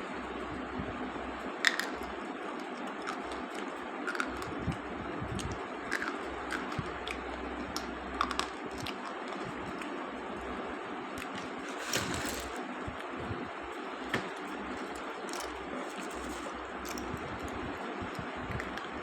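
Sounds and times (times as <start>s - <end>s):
slate pencils clicking and cracking: 1.6s - 4.8s, 5.4s - 10.0s, 14.1s - 19.0s.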